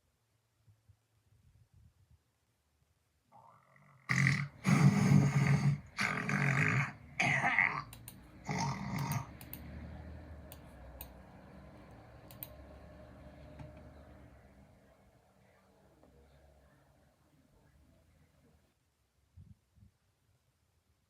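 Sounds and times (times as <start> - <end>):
person snoring loudly: 3.4 - 10.0
faint clicks: 7.8 - 8.3, 8.9 - 14.1.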